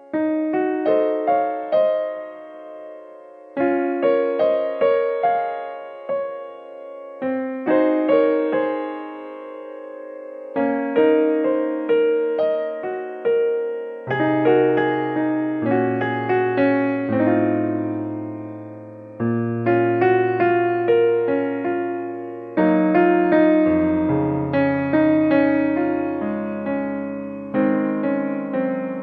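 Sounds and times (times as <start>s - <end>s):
piano chords: 0.0s - 29.0s.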